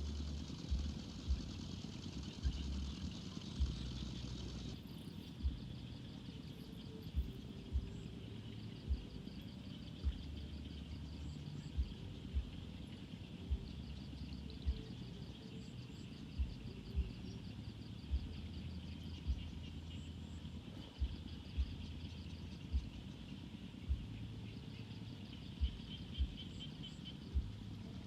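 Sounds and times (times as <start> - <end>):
steady low rumble: 0.0 - 28.0
dull low thump: 5.4 - 5.6, 7.2 - 7.9, 8.9 - 9.1, 10.0 - 10.4, 19.2 - 19.5, 21.0 - 21.9, 22.7 - 23.0, 23.9 - 24.2, 25.6 - 26.4, 27.3 - 27.6.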